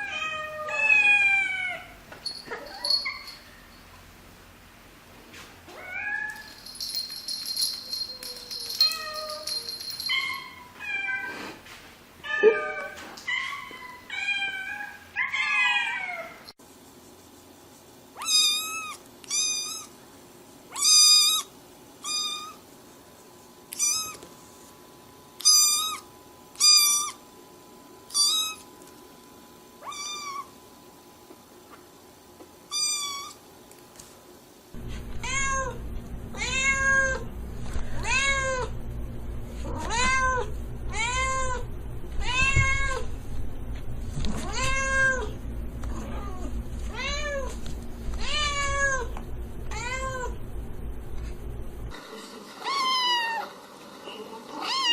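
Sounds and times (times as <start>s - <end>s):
steady low hum: 6.4s - 10.7s, 34.7s - 52.2s.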